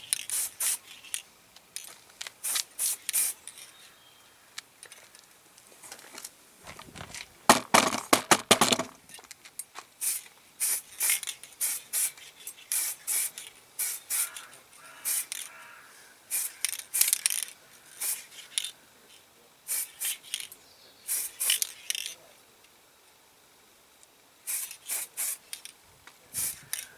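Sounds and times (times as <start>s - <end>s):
spray can rattling: 0.0s - 1.2s, 1.8s - 3.7s, 6.7s - 9.0s, 10.0s - 15.6s, 16.3s - 18.7s, 19.7s - 20.5s, 21.1s - 22.2s, 24.5s - 25.8s, 26.4s - 26.9s
spray paint hissing: 0.0s - 1.2s, 2.3s - 3.7s, 10.0s - 15.6s, 16.3s - 18.7s, 19.7s - 20.5s, 21.1s - 22.2s, 24.4s - 26.9s.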